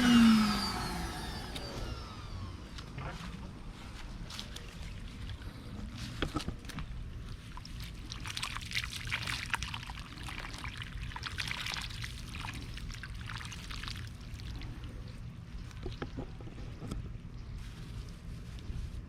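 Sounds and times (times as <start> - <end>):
low steady hum: 0.0 - 19.0
water pouring and splashing: 4.3 - 16.3.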